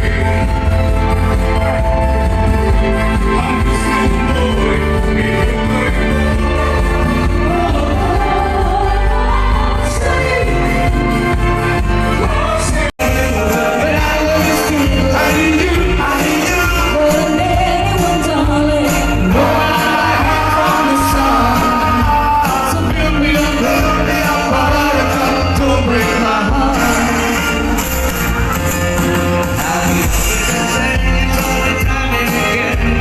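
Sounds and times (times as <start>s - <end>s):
live band playing: 0.0s - 33.0s
person singing: 12.0s - 27.9s, 29.1s - 33.0s.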